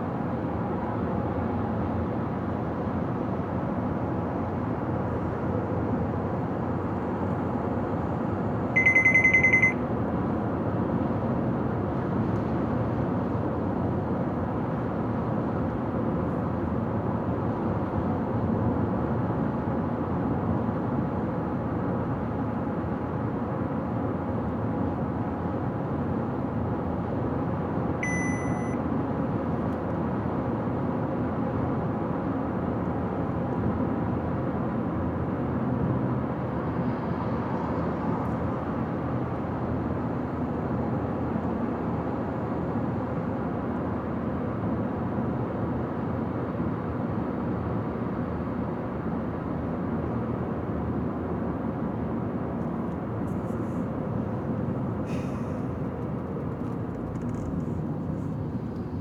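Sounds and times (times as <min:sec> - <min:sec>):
car road and engine noise: 0:00.2 - 0:59.0
short electronic beeps: 0:08.8 - 0:09.8, 0:28.0 - 0:28.8.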